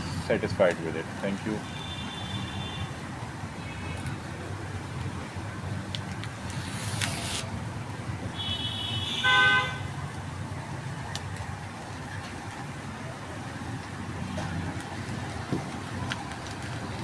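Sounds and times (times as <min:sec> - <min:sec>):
traffic rumble: 0:00.0 - 0:17.0
vehicle horn toot: 0:01.6 - 0:02.9, 0:08.4 - 0:09.8
short hiss: 0:06.5 - 0:07.5.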